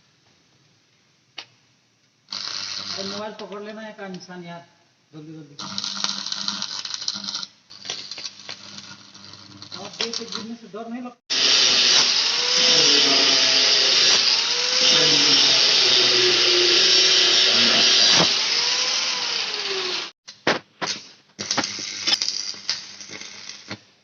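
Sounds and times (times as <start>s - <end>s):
electric drill boring steel: 2.3s - 3.2s, 5.6s - 10.5s, 11.3s - 20.2s, 21.4s - 23.8s.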